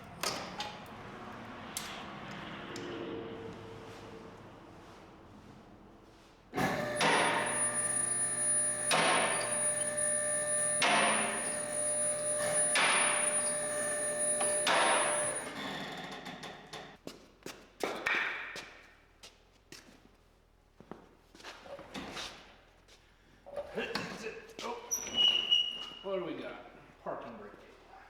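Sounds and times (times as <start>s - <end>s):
machine whining: 6.6s - 15.8s.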